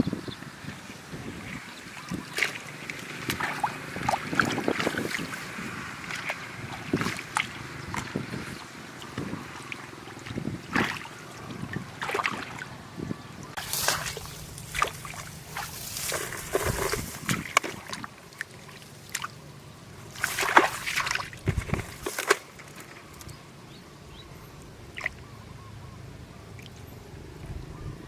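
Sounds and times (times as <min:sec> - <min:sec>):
muddy water sloshing: 0:01.0 - 0:23.4.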